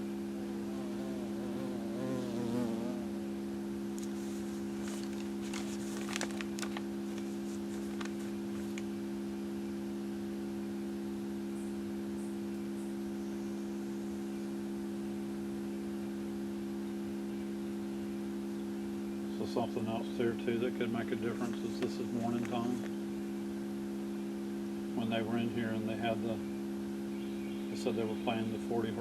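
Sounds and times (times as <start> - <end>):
low test tone hum: 0.0 - 5.0.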